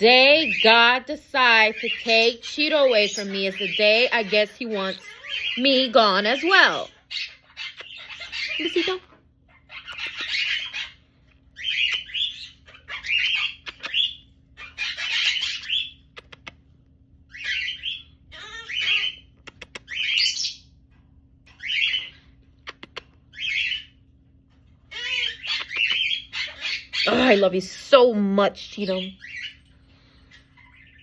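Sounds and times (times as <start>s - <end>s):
parrot chirping and squawking: 0.0s - 20.8s, 21.4s - 31.0s.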